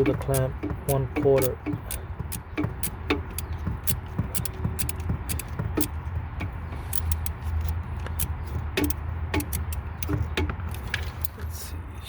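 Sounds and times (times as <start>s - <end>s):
hand tools clicking on metal: 0.0s - 11.4s
steady low rumble: 0.0s - 12.0s.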